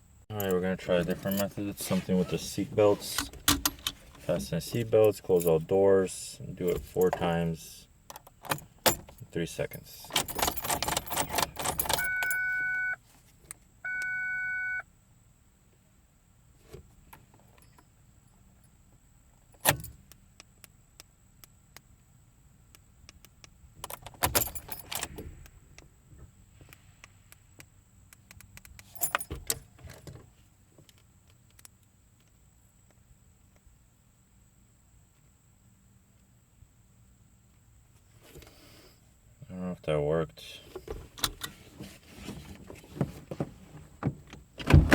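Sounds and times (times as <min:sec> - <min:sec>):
seat belt buckle clicking: 0:03.2 - 0:04.0, 0:26.7 - 0:29.7
keys jangling: 0:10.0 - 0:12.4, 0:23.8 - 0:25.2, 0:28.8 - 0:29.8
clicking and rattling: 0:10.1 - 0:12.1
car chime beeps: 0:11.9 - 0:13.0, 0:13.8 - 0:14.8.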